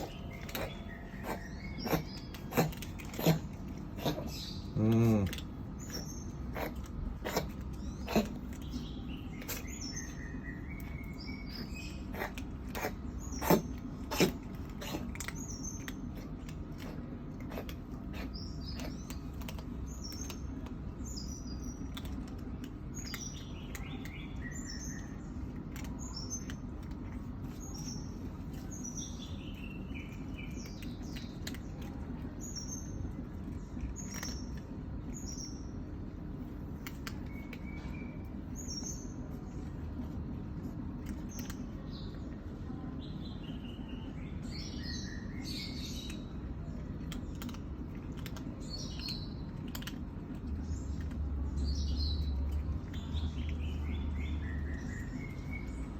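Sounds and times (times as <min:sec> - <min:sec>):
small birds chirping: 0:00.0 - 0:55.9.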